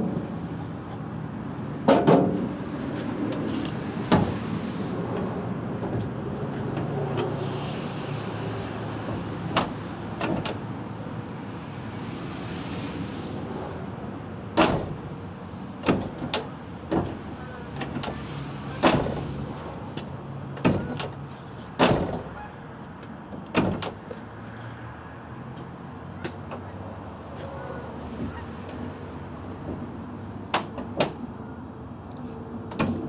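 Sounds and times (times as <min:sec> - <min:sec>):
metal latch clunks: 0:01.8 - 0:02.6, 0:03.3 - 0:04.4, 0:09.1 - 0:10.7, 0:14.6 - 0:15.2, 0:15.8 - 0:24.2, 0:29.5 - 0:31.5, 0:32.6 - 0:33.0
truck door shutting: 0:01.8 - 0:07.8, 0:08.7 - 0:10.9, 0:14.5 - 0:22.5, 0:23.2 - 0:24.2, 0:32.7 - 0:33.0.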